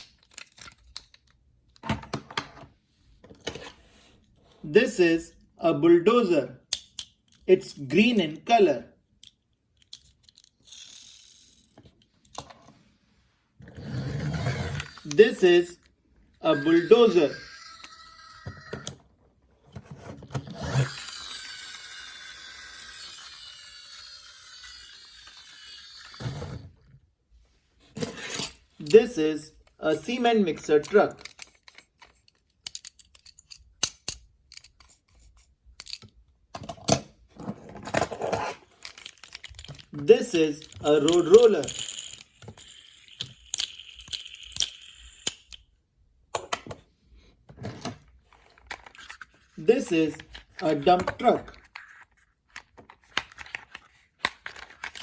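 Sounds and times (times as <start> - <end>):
plastic toy clicks and rattles: 9.2 - 12.4, 14.6 - 15.4, 20.5 - 26.4, 30.8 - 36.2, 38.7 - 45.7, 50.1 - 55.0
faint high steady tone: 16.4 - 19.0.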